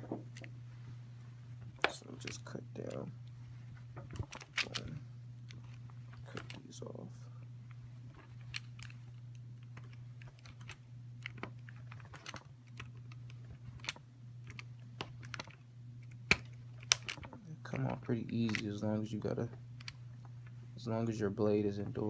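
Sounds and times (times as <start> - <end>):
low hum: 0.0 - 22.0
blade snapping through wires: 16.2 - 18.8.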